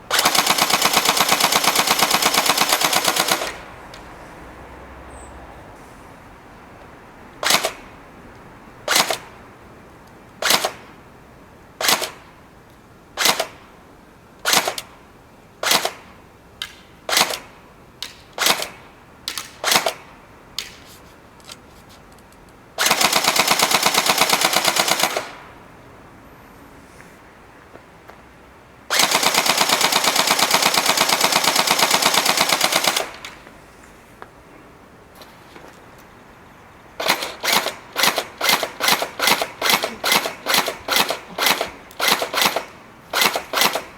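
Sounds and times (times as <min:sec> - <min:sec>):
airsoft shotgun firing: 0:07.4 - 0:07.8, 0:08.9 - 0:09.3, 0:10.4 - 0:10.8, 0:11.8 - 0:12.3, 0:13.2 - 0:13.6, 0:14.5 - 0:14.9, 0:15.6 - 0:16.1, 0:17.1 - 0:17.5, 0:37.0 - 0:43.9.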